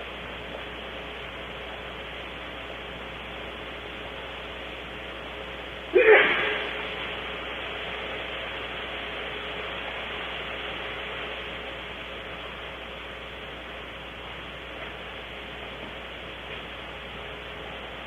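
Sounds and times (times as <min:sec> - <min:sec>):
steady hiss: 0:00.0 - 0:18.0
person sneezing: 0:05.9 - 0:06.8.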